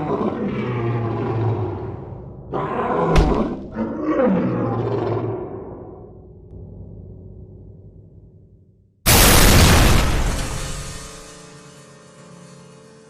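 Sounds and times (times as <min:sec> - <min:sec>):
deep roaring: 0:00.0 - 0:08.3
sharp crack: 0:09.1 - 0:11.3.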